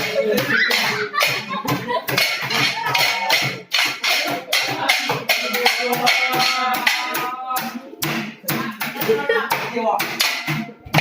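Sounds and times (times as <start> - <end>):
fast percussive beat: 0.0 - 11.0.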